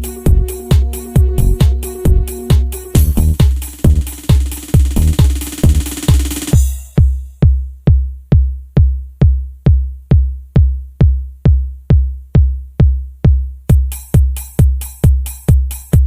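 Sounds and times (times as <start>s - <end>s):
hi-hat taps: 0.0s - 7.6s, 13.7s - 16.0s
kick drum beat: 0.0s - 16.0s.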